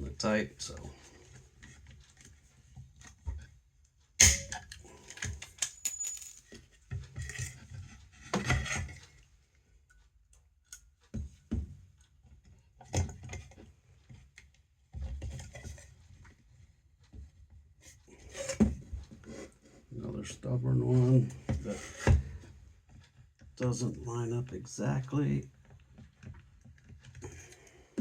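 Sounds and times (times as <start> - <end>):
metal parts clinking: 5.6 - 6.6.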